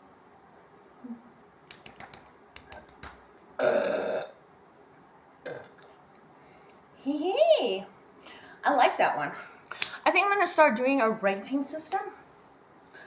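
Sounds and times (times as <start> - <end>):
woman belching: 3.6 - 4.4.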